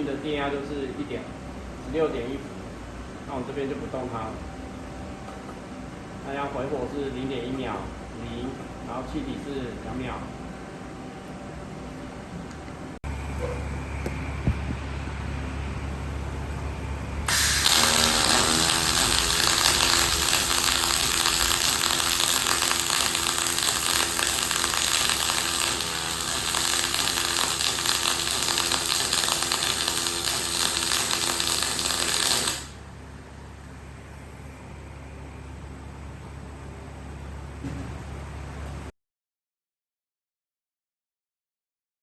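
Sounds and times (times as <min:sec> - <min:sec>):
welding arc crackling hiss: 0:17.2 - 0:32.8.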